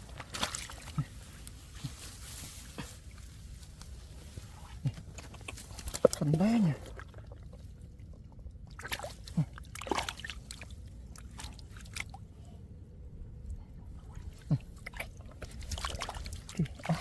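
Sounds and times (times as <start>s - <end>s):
hands squelching in wet mud: 0.1s - 12.4s, 14.0s - 17.0s
wet smacks and drips: 4.9s - 12.2s, 14.1s - 17.0s.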